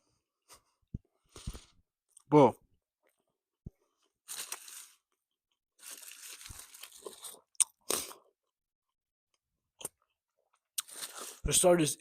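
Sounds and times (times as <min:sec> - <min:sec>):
close-up chewing: 0:03.9 - 0:08.6, 0:09.3 - 0:11.4.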